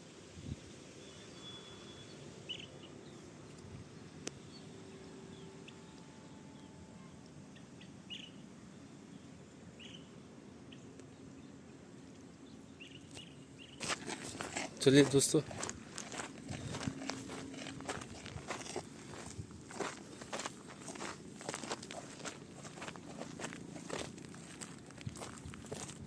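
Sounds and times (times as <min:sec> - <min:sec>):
high bird chirps: 0:05.3 - 0:08.4.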